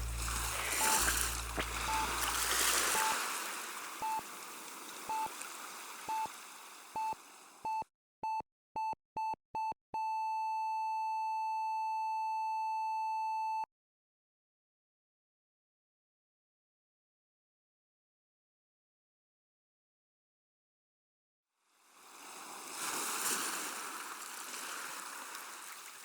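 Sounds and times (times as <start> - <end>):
electronic beeps: 0.0 - 3.2.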